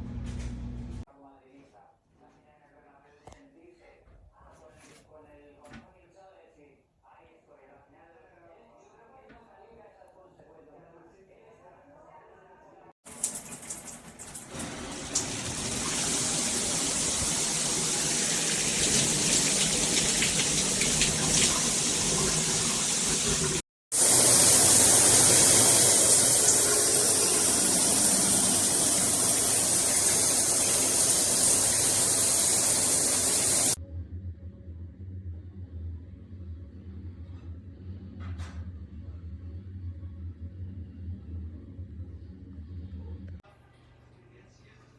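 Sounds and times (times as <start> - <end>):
shower water spraying: 13.1 - 33.8
low hum: 33.8 - 43.4.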